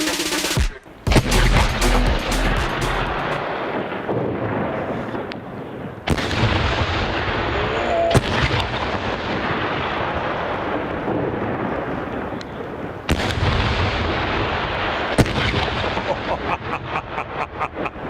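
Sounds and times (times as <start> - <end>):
steady noisy din: 0.0 - 3.4
fireworks banging: 0.0 - 4.6.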